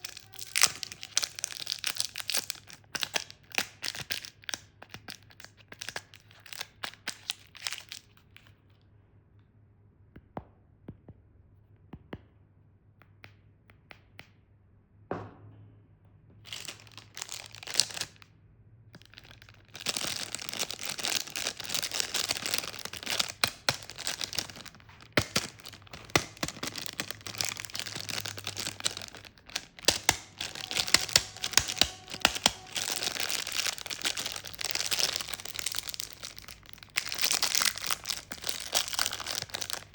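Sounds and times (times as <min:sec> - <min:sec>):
plastic candy wrappers crinkling: 0:00.0 - 0:08.6, 0:16.4 - 0:18.3, 0:19.0 - 0:39.9.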